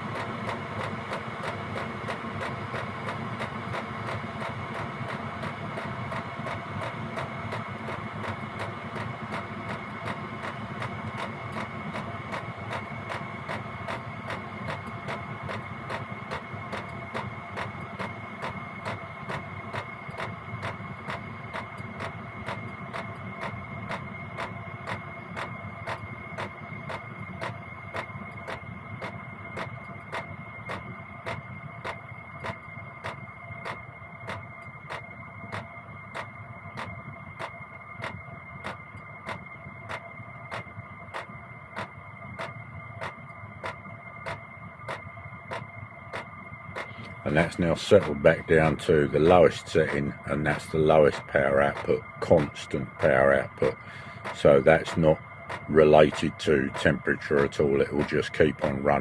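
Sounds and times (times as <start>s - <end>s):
fuel pump ticking: 0.0s - 59.0s
heater fan and burner: 0.0s - 59.0s.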